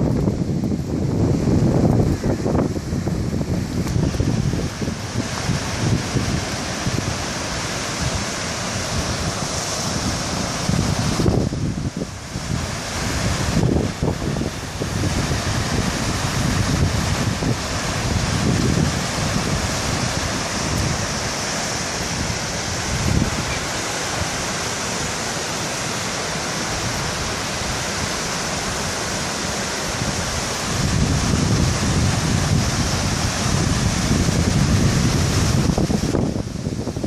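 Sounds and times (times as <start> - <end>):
waterfall rushing: 0.0 - 37.0
wind buffeting microphone: 0.0 - 37.0.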